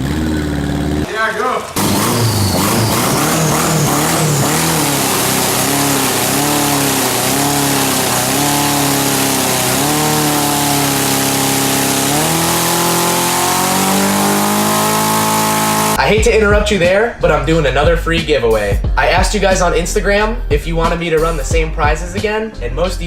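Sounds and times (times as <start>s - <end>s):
turbocharged car engine revving: 0.0s - 16.0s.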